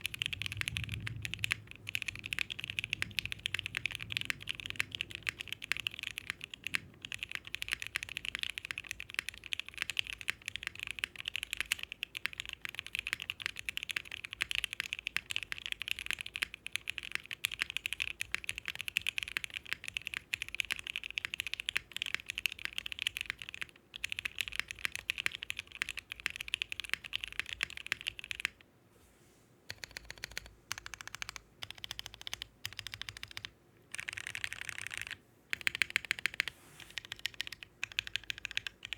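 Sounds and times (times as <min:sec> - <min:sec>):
fast typing on mechanical keyboard: 0:00.0 - 0:28.6, 0:29.7 - 0:38.9.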